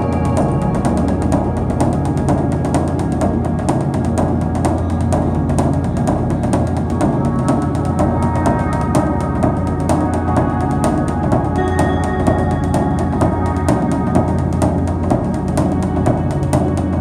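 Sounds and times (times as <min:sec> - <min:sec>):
low drums: 0:00.0 - 0:17.0
sustained tones: 0:06.2 - 0:17.0.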